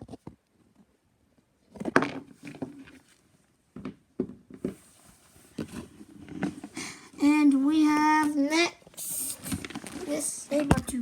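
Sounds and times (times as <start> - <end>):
toy figures knocking: 10.6 - 11.0.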